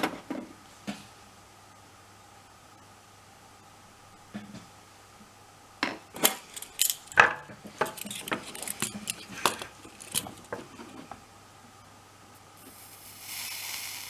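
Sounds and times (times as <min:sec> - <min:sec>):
metal tools clinking: 0:06.2 - 0:10.6.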